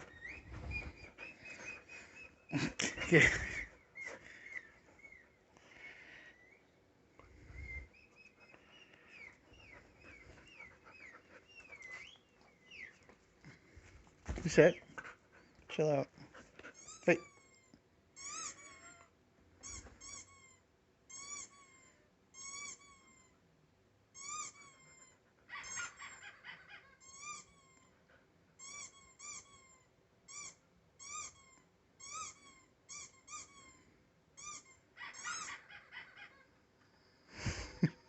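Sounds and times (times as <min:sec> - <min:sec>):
squeaky dog toy squeaking: 0:16.7 - 0:23.4, 0:24.1 - 0:28.0, 0:28.6 - 0:36.5.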